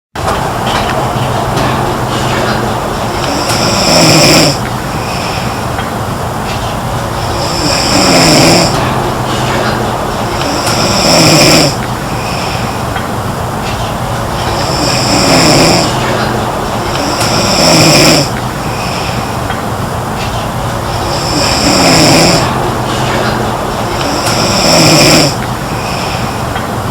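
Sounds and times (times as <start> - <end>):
girl snoring: 3.2 - 5.4, 7.2 - 8.8, 10.4 - 12.6, 14.6 - 16.0, 16.9 - 18.3, 21.0 - 22.5, 24.0 - 26.2.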